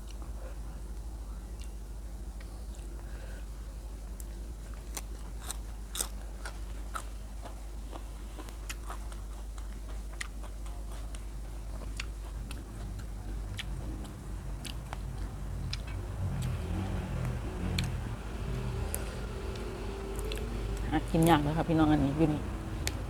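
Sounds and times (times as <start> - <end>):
chewing crunchy food: 4.2 - 17.9.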